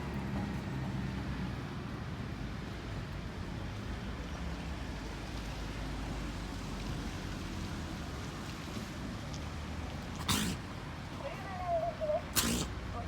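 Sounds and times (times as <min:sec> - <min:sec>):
hiss: 0:10.2 - 0:10.7, 0:12.4 - 0:12.8.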